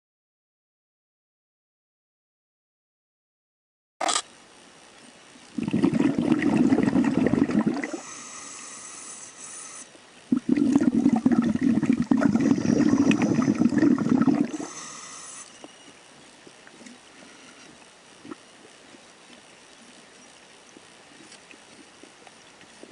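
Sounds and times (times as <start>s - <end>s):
regulator bubbling exhalations: 5.6s - 15.8s, 16.8s - 18.5s
thin hiss of inhalation: 7.8s - 10.0s, 14.2s - 15.9s, 17.2s - 17.8s.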